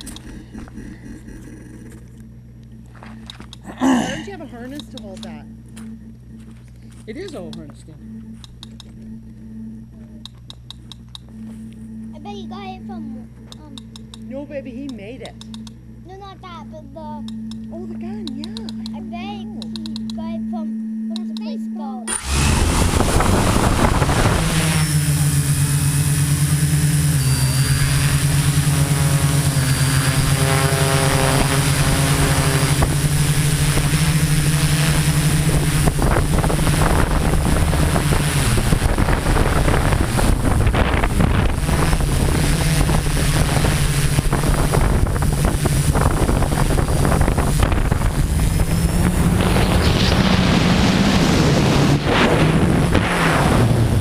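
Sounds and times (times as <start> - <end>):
drone motors humming: 0.0 - 54.0
wind noise on microphone: 22.1 - 54.0.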